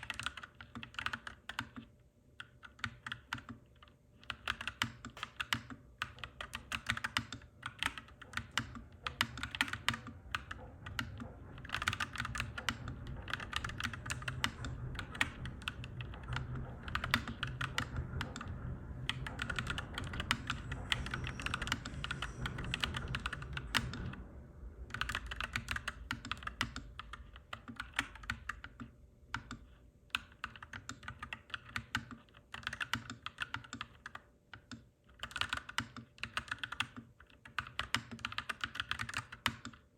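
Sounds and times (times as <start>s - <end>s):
typing on mechanical keyboard: 0.0s - 24.2s, 24.9s - 39.9s
low rumble: 8.7s - 29.7s.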